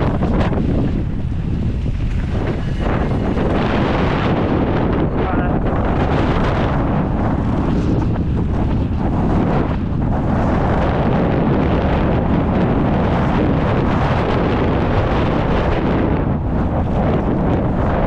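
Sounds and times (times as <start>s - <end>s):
bike rattling and knocking: 0.0s - 5.0s, 5.6s - 14.0s
tyre rumble: 0.0s - 18.0s
wind rush on microphone: 0.0s - 18.0s.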